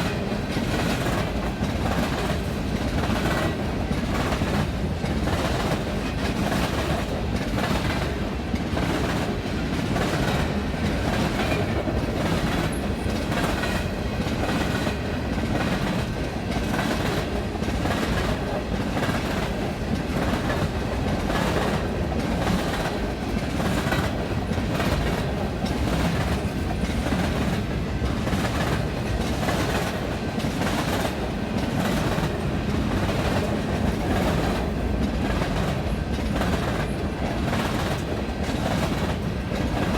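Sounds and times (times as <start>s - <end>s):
train wheels clacking over rails: 0.0s - 39.9s.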